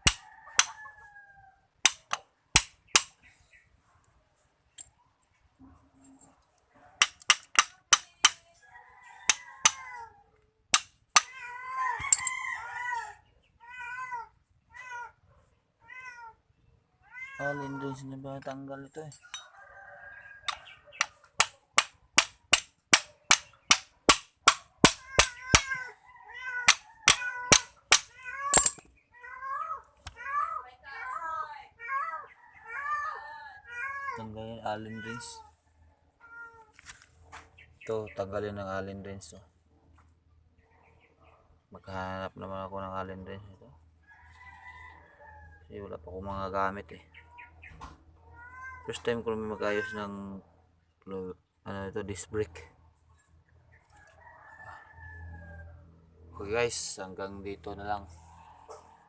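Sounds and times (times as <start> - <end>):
hammer striking metal: 1.9 - 3.1, 21.4 - 25.7, 26.7 - 28.8
cat meowing: 17.0 - 18.0, 24.9 - 30.6, 31.8 - 35.5, 48.3 - 50.1.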